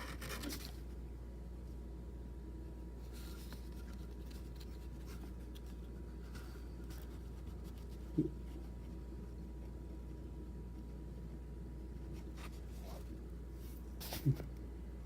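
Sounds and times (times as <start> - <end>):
paper rustling: 0.0 - 0.9, 3.1 - 9.0
steady low hum: 0.0 - 15.0.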